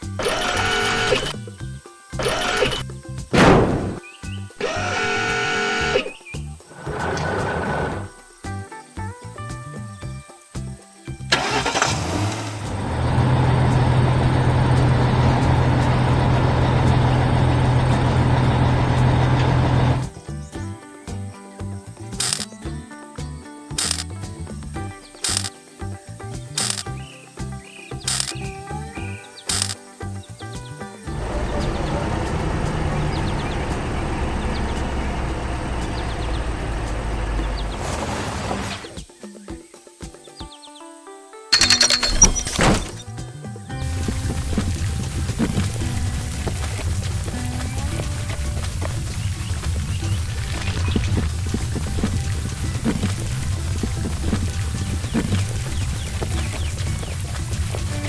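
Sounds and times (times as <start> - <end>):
engine running loudly: 0.2 - 1.4, 11.4 - 20.1, 31.1 - 38.8, 43.8 - 58.0
light cartoon music: 41.5 - 58.0.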